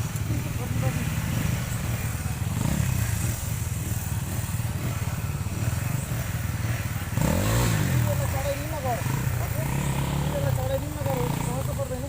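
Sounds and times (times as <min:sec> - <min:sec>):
motorcycle engine droning: 0:00.0 - 0:12.0.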